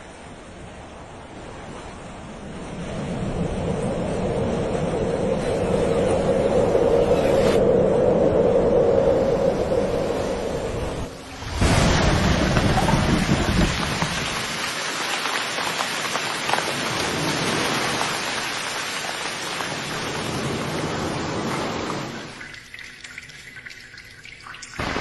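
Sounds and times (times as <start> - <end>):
heavy rain pouring: 10.9 - 25.0
deep rumble of thunder: 11.0 - 14.3.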